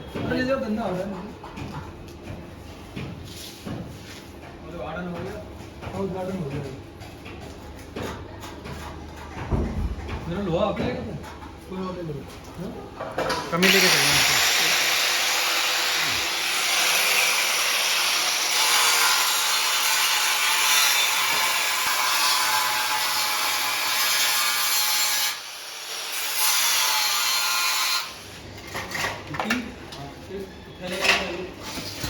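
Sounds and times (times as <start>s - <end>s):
angle grinder cutting steel: 13.6s - 28.2s.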